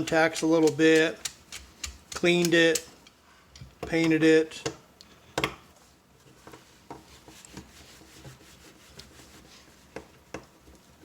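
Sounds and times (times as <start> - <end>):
faint rubbing: 6.3 - 9.9.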